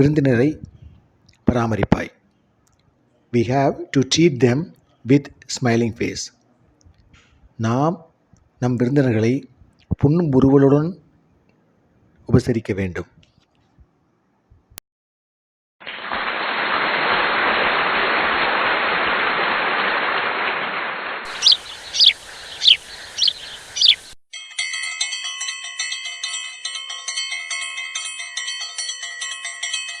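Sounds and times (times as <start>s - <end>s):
steady rushing noise: 20.5s - 24.2s
high falling chirps: 21.3s - 24.2s.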